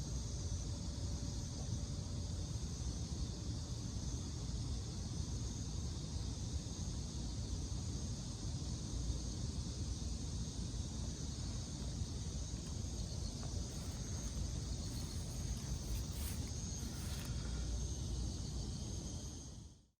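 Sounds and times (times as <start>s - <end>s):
insects chirring: 0.3s - 19.8s
low outdoor rumble: 11.0s - 19.0s.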